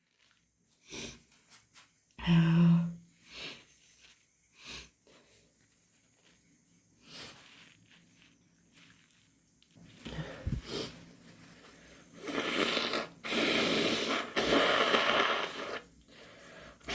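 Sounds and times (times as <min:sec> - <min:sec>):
nasal breaths: 0:09.9 - 0:16.9.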